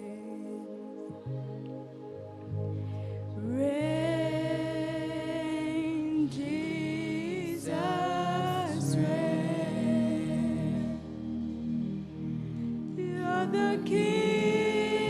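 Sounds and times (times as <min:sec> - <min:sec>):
sustained instrumental backing: 0:00.0 - 0:15.0
person singing long notes: 0:12.9 - 0:15.0.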